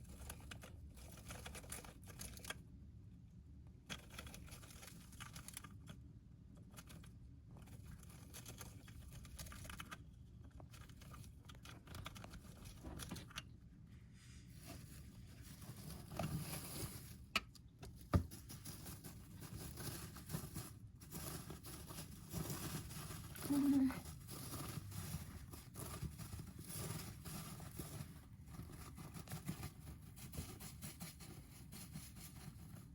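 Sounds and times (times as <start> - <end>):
hamster rustling in bedding: 14.0 - 17.3, 17.9 - 32.9.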